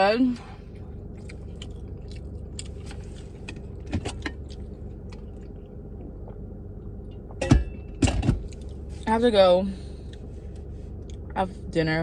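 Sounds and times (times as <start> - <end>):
steady low hum: 0.0 - 12.0
person chewing food: 0.7 - 6.5.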